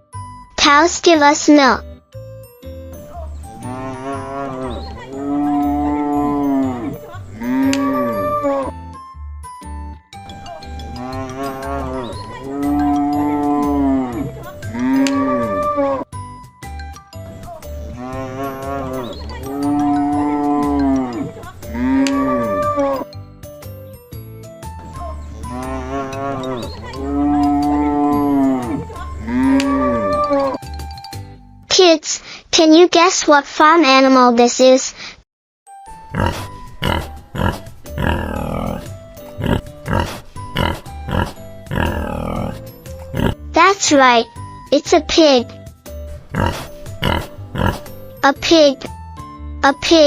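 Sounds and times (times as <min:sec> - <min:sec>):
cow mooing: 0:03.6 - 0:08.8, 0:10.8 - 0:16.0, 0:17.9 - 0:23.1, 0:25.3 - 0:30.6, 0:36.1 - 0:43.4, 0:46.3 - 0:47.9.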